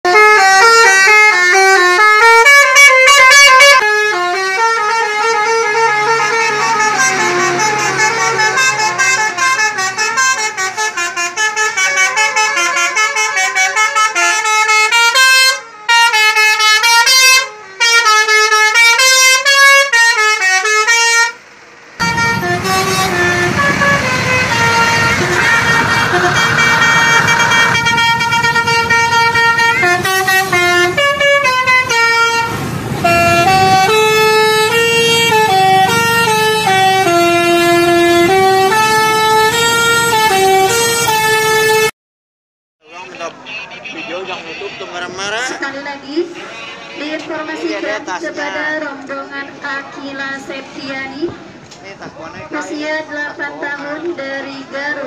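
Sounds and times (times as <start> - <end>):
musical bus horn tune: 0.0 - 41.9, 43.0 - 45.6, 46.2 - 47.9
low engine-like noise: 21.3 - 30.2.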